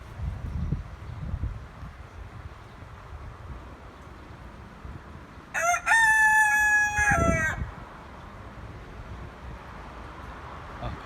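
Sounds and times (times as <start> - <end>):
rooster crowing: 5.5 - 7.7.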